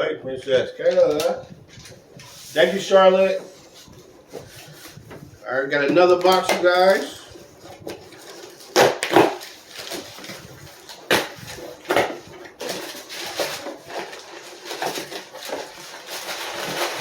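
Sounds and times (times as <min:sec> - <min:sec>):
packaging rustling: 0:00.7 - 0:17.0
tape ripping: 0:07.8 - 0:17.0.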